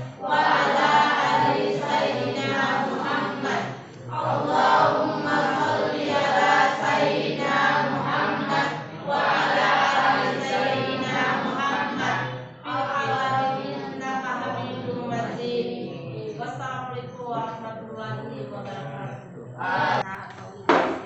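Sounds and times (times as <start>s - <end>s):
group singing in unison: 0.0s - 15.9s, 19.6s - 20.1s.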